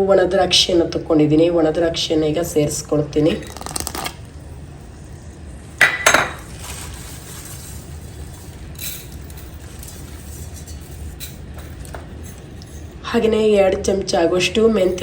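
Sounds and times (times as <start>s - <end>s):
low steady hum: 0.0s - 15.0s
utensils clinking against a pot: 5.8s - 13.0s.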